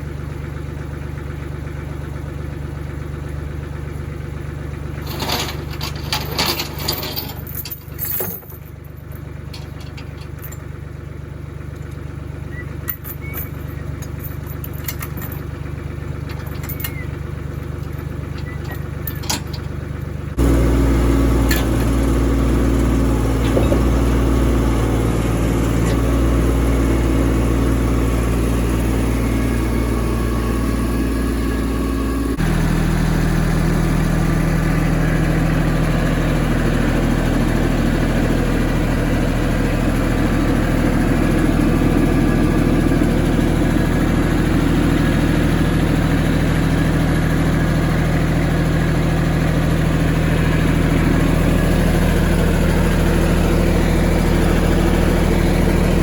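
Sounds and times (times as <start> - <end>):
engine idling: 0.0 - 56.0
clicks and rattles: 5.0 - 10.6, 12.9 - 15.5, 16.2 - 19.8.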